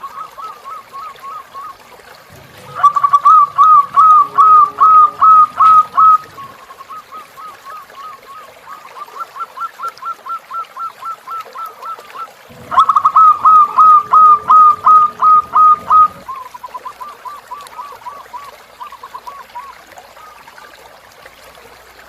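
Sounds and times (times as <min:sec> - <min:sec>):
doves cooing: 0:00.0 - 0:20.4
trickling stream water: 0:00.0 - 0:22.0.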